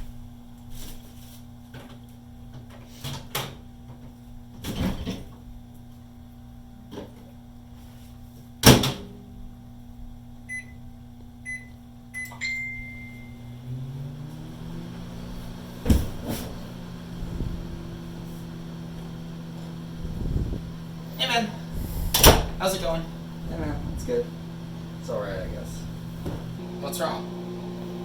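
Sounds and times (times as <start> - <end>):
microwave oven humming: 0.0 - 28.0
microwave beeps: 10.5 - 10.8, 11.4 - 14.1.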